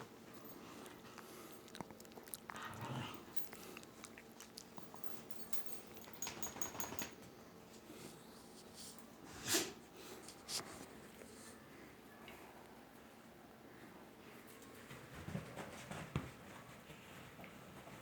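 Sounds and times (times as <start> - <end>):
clicking mouth sounds: 1.6 - 2.7.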